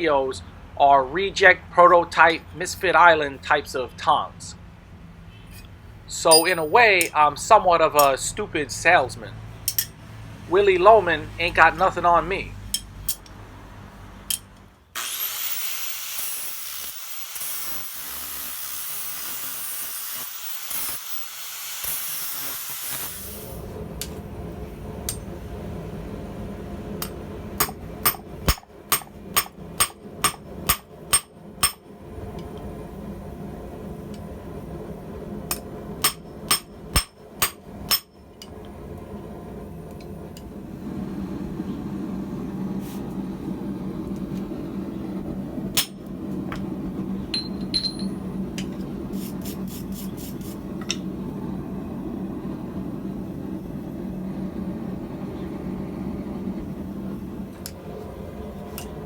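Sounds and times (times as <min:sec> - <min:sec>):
hammer striking steel on anvil: 0:06.3 - 0:07.2, 0:09.7 - 0:10.0, 0:12.7 - 0:13.3, 0:14.3 - 0:14.5, 0:25.1 - 0:25.3, 0:27.0 - 0:31.9, 0:35.5 - 0:38.2, 0:45.8 - 0:46.0, 0:47.4 - 0:48.7
steady hiss: 0:15.4 - 0:23.8, 0:49.0 - 0:50.8.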